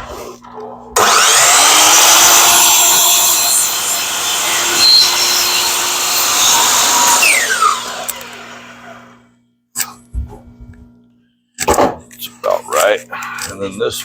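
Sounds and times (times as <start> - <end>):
power saw cutting wood: 1.0 - 9.2
saw motor winding down whine: 1.0 - 9.2.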